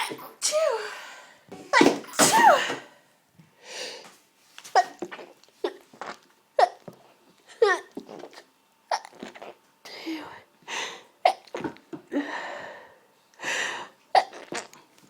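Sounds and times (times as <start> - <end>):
woman sneezing: 0.0 - 1.0, 1.7 - 2.9
breath: 2.8 - 4.2, 9.9 - 11.1, 12.1 - 14.0.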